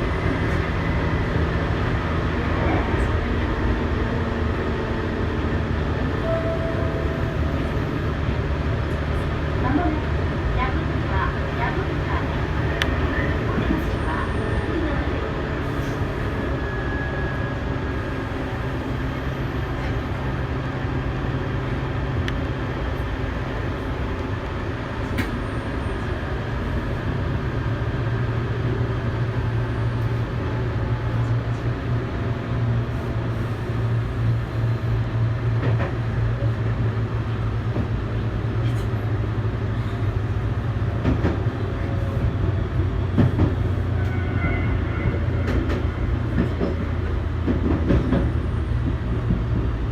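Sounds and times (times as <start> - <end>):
train motor and rolling hum: 0.0 - 49.9
rail joint clicks: 11.6 - 14.2, 24.0 - 25.4, 35.5 - 36.6, 37.2 - 39.2, 40.7 - 42.3, 43.0 - 49.8.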